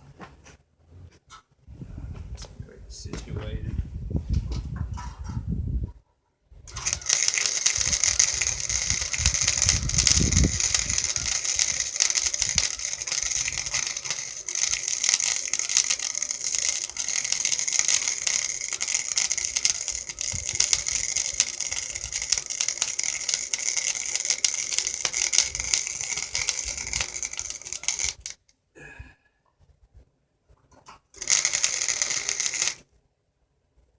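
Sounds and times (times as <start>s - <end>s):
welding arc crackle and sizzle: 6.7s - 28.4s, 31.2s - 32.8s.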